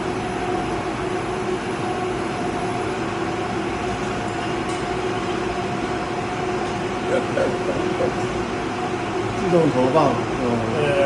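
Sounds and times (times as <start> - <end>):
industrial machinery humming: 0.0 - 11.0.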